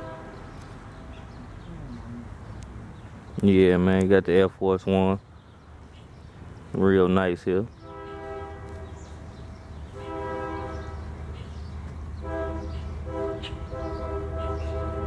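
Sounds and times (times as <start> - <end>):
train horn blasts: 0.0 - 0.6, 7.8 - 9.3, 9.9 - 11.3, 12.2 - 15.0
passing train rumble: 0.0 - 3.3, 5.2 - 15.0.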